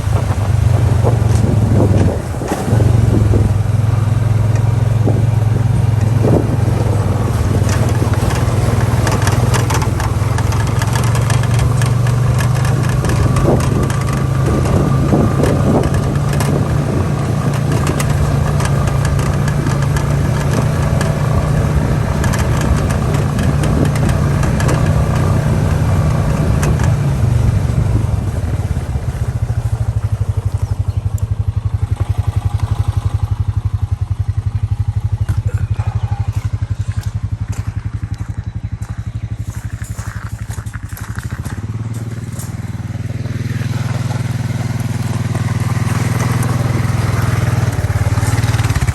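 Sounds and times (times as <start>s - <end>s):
motorbike engine running: 0.0s - 48.9s.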